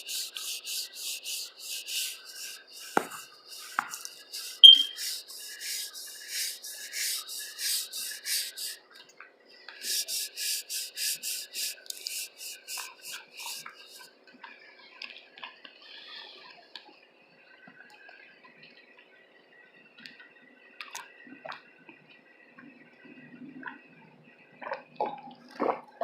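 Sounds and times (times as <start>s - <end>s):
rubbing or scratching strokes: 0.0s - 8.8s, 9.8s - 14.1s
sharp high squeak: 4.5s - 5.2s.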